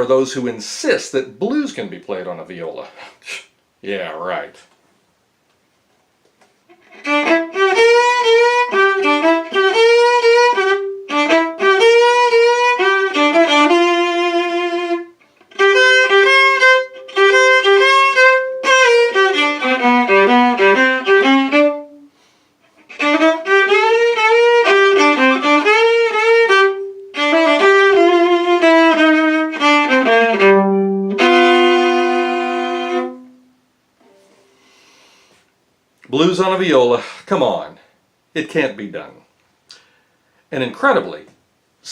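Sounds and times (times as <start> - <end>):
solo bowed viola blues: 6.7 - 34.9.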